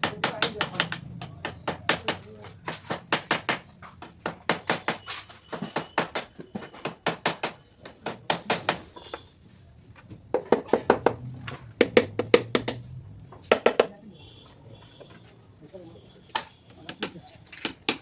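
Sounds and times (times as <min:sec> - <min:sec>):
hammer striking wood: 0:00.0 - 0:09.1, 0:10.3 - 0:14.0, 0:16.3 - 0:18.0.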